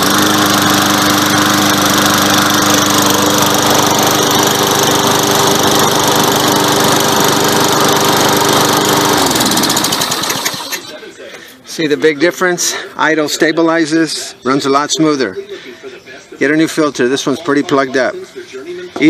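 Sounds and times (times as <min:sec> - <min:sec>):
lawn mower engine idling: 0:00.0 - 0:10.9.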